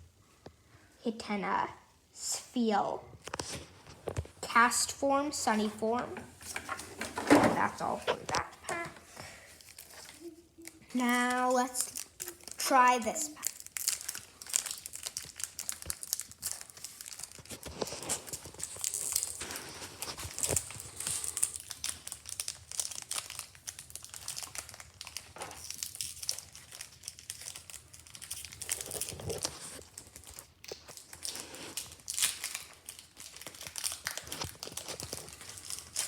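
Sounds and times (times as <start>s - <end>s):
foil wrapper crinkling and tearing: 8.2s - 36.0s.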